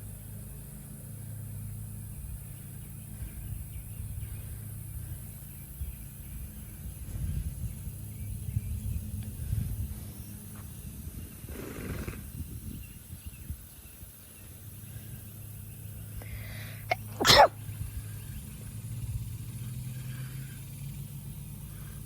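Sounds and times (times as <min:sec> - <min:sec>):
sneeze-like blast of breath: 0:16.4 - 0:17.6.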